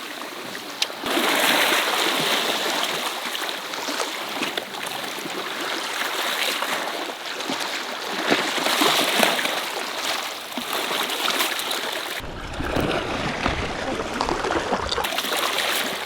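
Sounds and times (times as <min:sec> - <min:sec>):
water rushing and splashing: 0:12.2 - 0:16.0.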